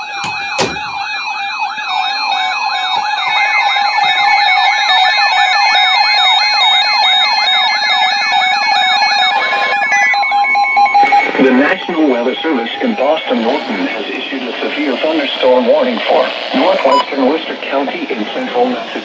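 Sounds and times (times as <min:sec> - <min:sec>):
loud steady alert tone: 0:00.0 - 0:01.5.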